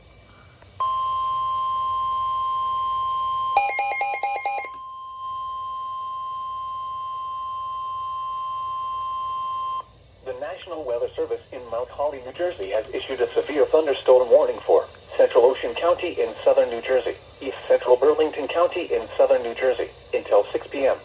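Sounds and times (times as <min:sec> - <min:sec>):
steady pure warning tone: 0:00.0 - 0:21.0
sharp beeps: 0:00.8 - 0:05.7.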